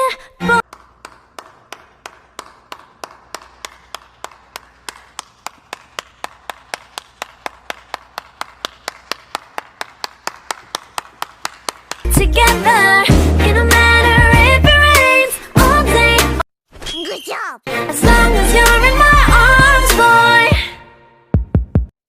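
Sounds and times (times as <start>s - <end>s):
person clapping hands: 0.6s - 12.1s.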